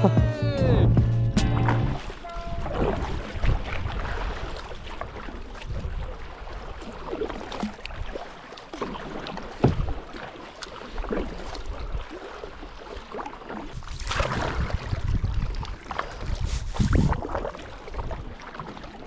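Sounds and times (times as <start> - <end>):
wind rumbling on microphone: 0.7 - 7.1, 13.7 - 18.4
kayak paddle splashing water: 1.4 - 19.0.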